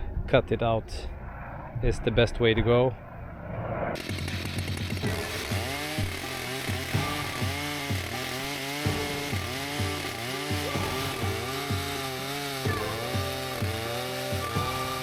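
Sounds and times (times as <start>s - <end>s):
chainsaw cutting log: 4.0s - 15.0s
background music with steady beat: 4.2s - 15.0s.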